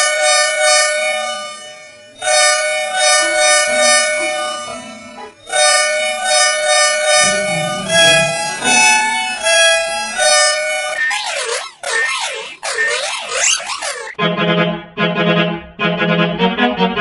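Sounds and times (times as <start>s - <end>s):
pulsing effected bus horn chord: 0.0s - 11.0s.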